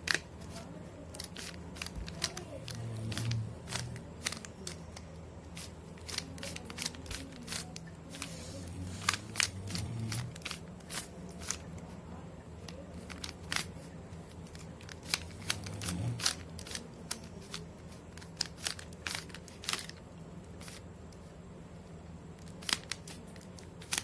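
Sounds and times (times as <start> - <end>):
puzzle cube plastic clicks: 0.0 - 11.9, 12.6 - 20.0, 20.6 - 20.8, 22.4 - 24.0.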